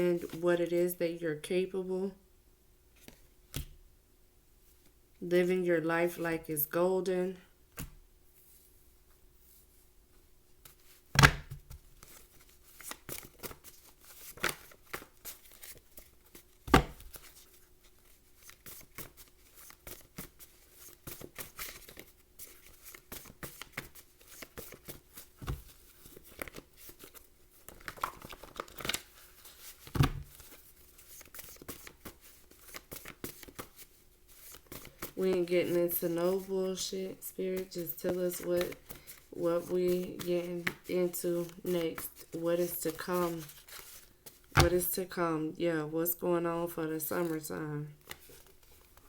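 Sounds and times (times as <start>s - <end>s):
cards shuffling: 11.7s - 36.5s, 37.6s - 44.9s.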